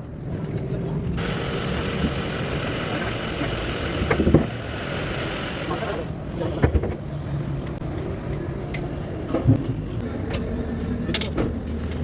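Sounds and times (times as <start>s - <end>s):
machinery humming: 1.2s - 6.2s.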